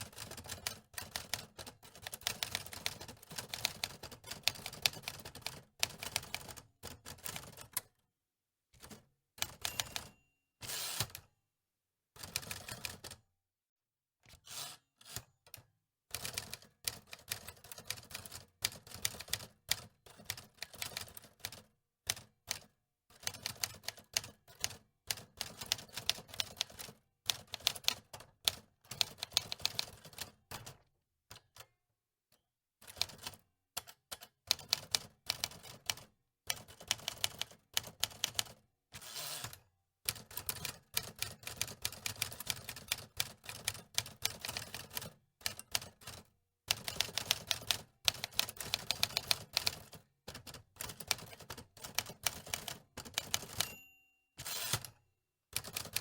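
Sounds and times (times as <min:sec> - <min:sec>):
typewriter keys clacking: 0:46.7 - 0:53.8, 0:54.4 - 0:55.0, 0:55.6 - 0:56.0.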